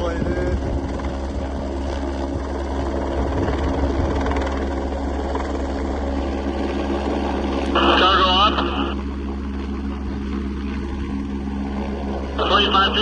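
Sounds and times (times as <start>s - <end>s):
helicopter engine and rotor drone: 0.0s - 13.0s
radio speech: 7.7s - 9.0s, 12.3s - 13.0s.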